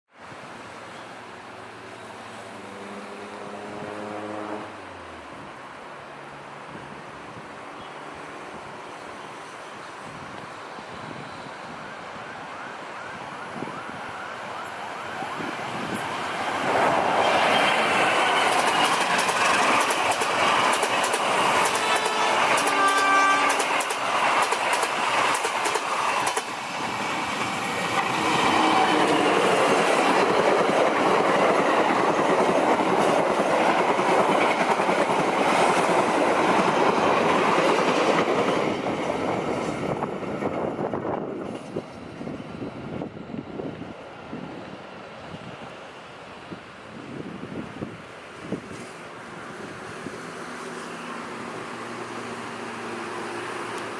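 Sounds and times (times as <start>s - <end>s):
train horn: 2.8s - 5.0s, 21.6s - 23.8s, 28.2s - 29.5s
train rumble and wheel clatter: 13.5s - 53.9s.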